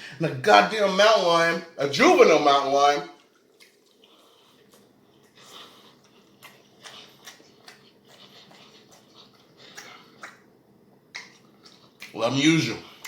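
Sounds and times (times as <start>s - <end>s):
wet mouth clicks and smacks: 3.2s - 5.4s, 6.0s - 10.5s, 11.1s - 12.2s
person chewing food: 3.2s - 12.2s.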